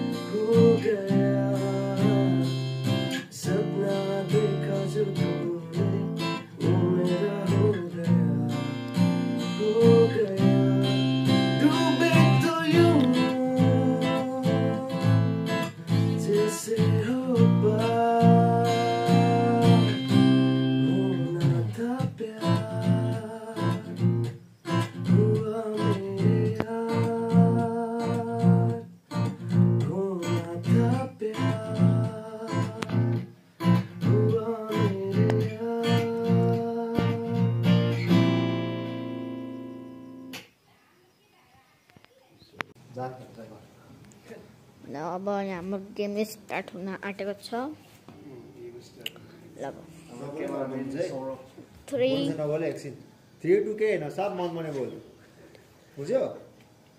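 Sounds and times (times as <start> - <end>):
person singing: 0.0 - 24.0, 25.0 - 28.9, 29.8 - 33.2, 34.0 - 37.6
strummed acoustic guitar: 0.0 - 40.5.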